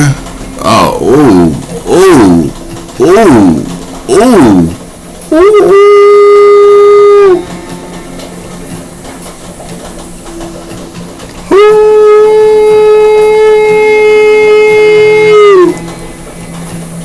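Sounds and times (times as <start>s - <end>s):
shofar blasts: 5.3s - 7.5s, 11.4s - 16.0s.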